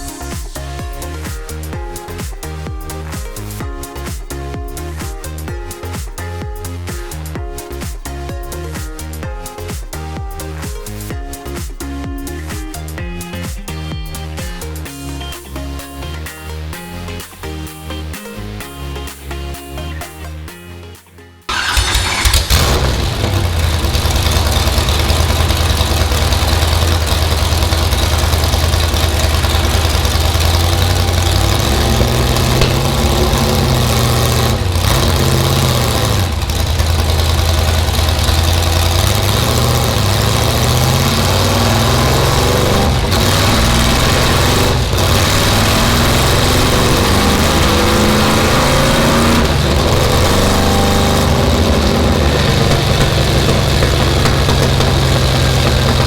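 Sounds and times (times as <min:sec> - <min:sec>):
race car engine idling and revving: 0:21.5 - 0:56.0.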